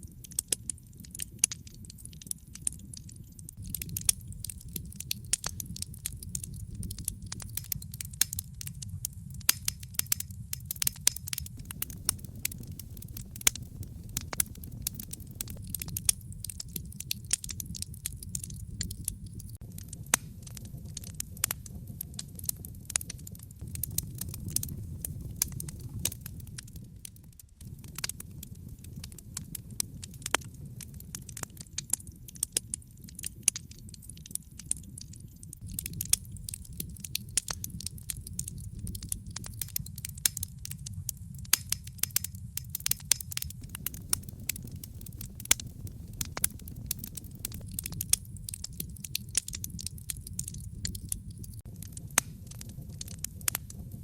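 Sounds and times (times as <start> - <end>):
fire crackling and popping: 0.0 - 54.0
low rumble of flames: 0.0 - 54.0.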